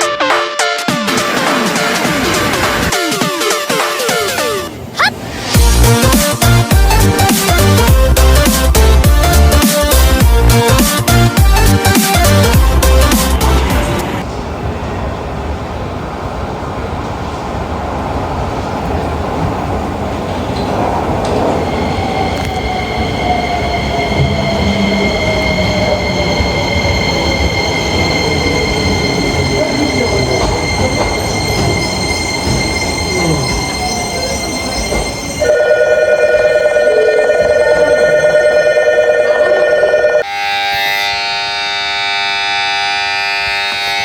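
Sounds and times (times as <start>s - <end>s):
train wheels rumbling: 1.0s - 38.7s
station emergency bell ringing: 21.3s - 44.0s
high squeal: 21.6s - 35.5s.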